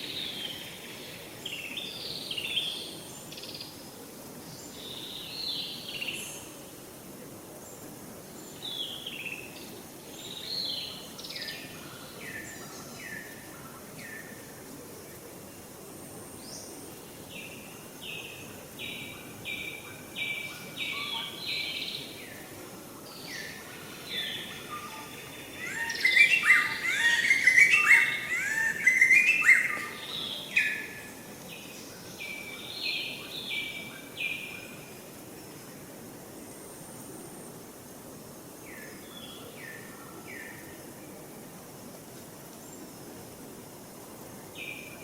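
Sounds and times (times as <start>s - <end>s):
birds chirping: 23.2s - 31.1s.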